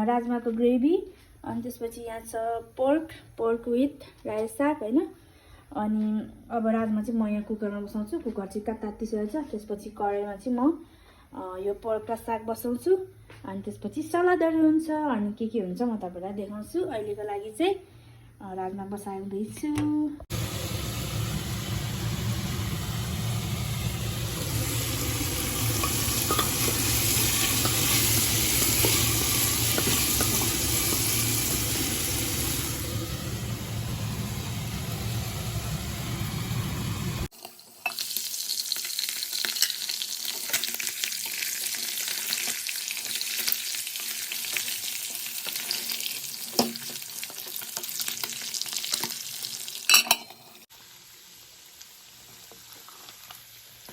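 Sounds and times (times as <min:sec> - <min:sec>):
food sizzling in hot oil: 0:20.3 - 0:53.9
heavy low rumble: 0:32.2 - 0:37.3.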